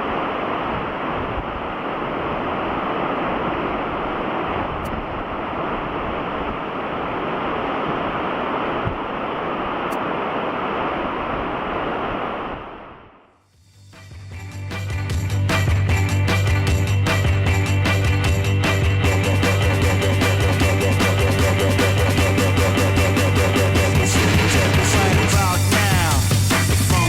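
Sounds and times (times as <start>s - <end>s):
wind on microphone: 0.0s - 13.0s
ocean surf: 0.0s - 13.1s, 17.1s - 27.0s.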